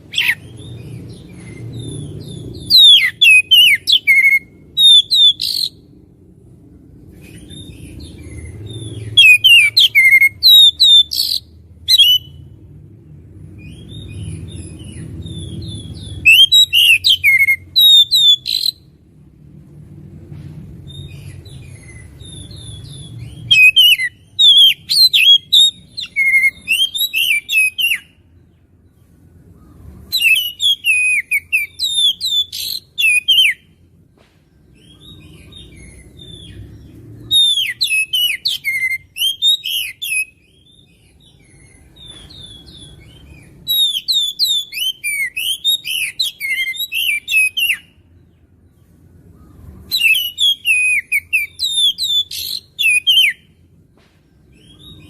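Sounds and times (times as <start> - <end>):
magpie-robin singing: 0.0 - 5.9, 7.2 - 12.6, 13.6 - 18.9, 20.9 - 28.5, 29.4 - 33.9, 34.7 - 53.7
faint low rumble: 0.0 - 17.8, 18.8 - 26.7.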